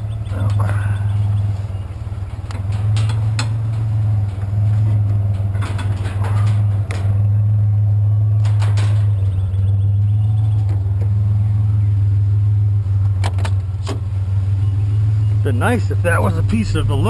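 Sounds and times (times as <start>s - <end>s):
pickup truck engine running: 0.0s - 17.0s.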